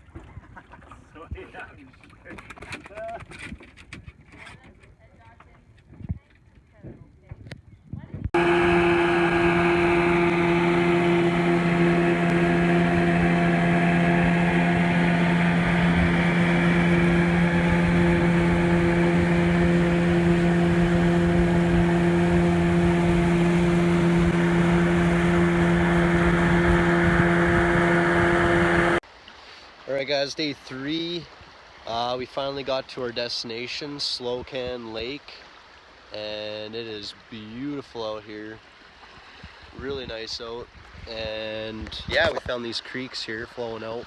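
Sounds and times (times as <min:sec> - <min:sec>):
vehicle engine and road drone: 0:08.4 - 0:29.0.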